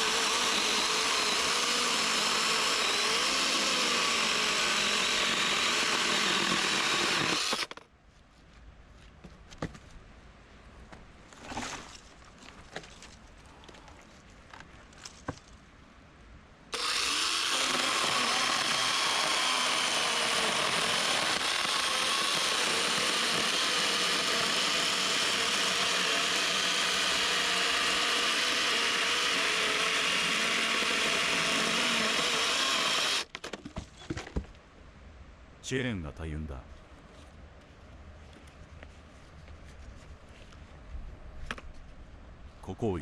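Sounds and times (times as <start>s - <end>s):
electric chainsaw running: 0.0s - 7.8s, 16.7s - 33.3s.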